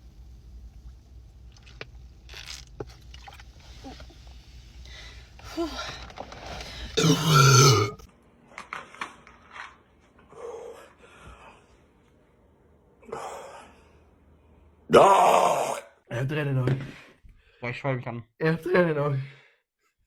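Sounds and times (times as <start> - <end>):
person burping: 7.0 - 8.0
short throaty sounds: 7.0 - 8.0.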